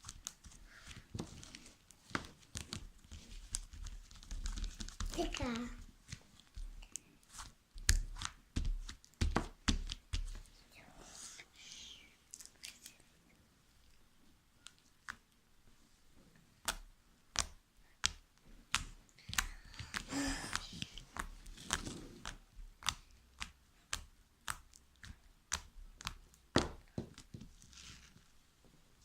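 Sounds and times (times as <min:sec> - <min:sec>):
slime squelching: 0:16.6 - 0:28.1.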